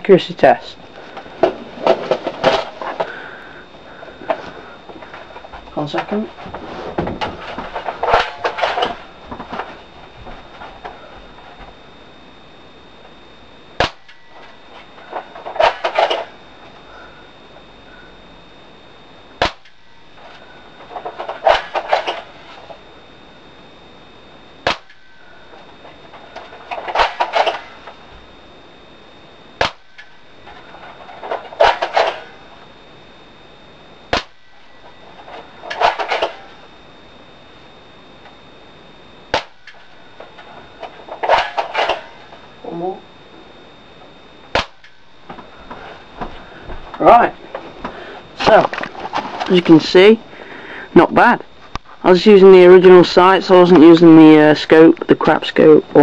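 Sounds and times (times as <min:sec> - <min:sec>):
airsoft rifle shots: 0:13.8 - 0:14.2, 0:15.6 - 0:16.2, 0:19.4 - 0:19.8, 0:24.6 - 0:25.0, 0:26.8 - 0:27.7, 0:29.6 - 0:29.9, 0:31.6 - 0:32.3, 0:34.1 - 0:34.4, 0:39.3 - 0:39.6, 0:41.2 - 0:42.1, 0:44.5 - 0:44.9
airsoft rifle sharp crack: 0:24.6 - 0:25.0, 0:34.1 - 0:34.4, 0:44.5 - 0:44.8.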